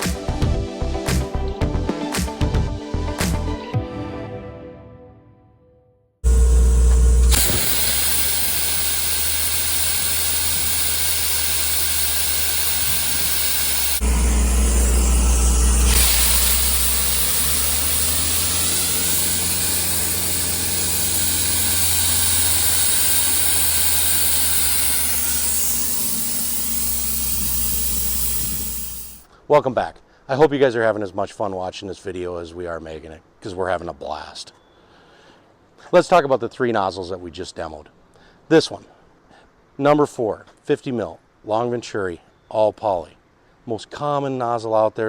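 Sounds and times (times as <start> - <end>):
blast nozzle rushing hiss: 6.2 - 29.2.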